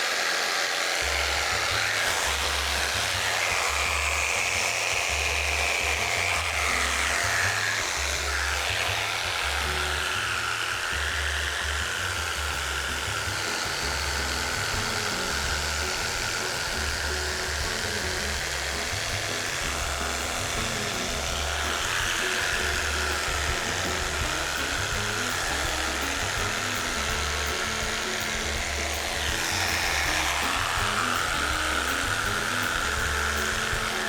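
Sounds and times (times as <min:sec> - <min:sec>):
electric cutting tool buzzing: 0:00.0 - 0:34.0
background music with steady beat: 0:01.0 - 0:34.0.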